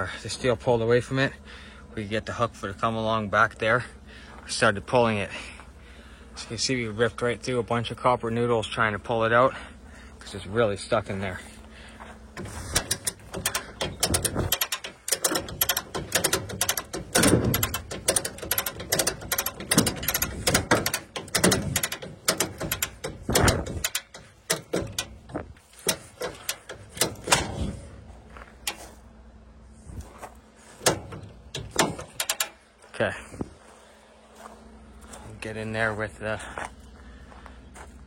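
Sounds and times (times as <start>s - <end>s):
hand winch ratchet clicking: 12.4s - 27.9s, 28.6s - 28.9s, 30.8s - 32.6s.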